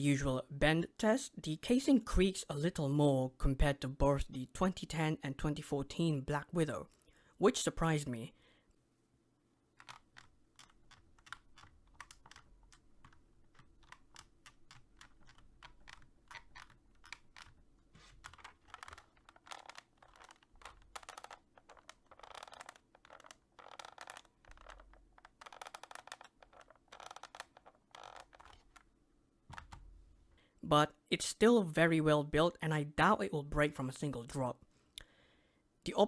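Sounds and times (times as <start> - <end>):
plastic keyboard casing creaking: 9.8 - 30.0.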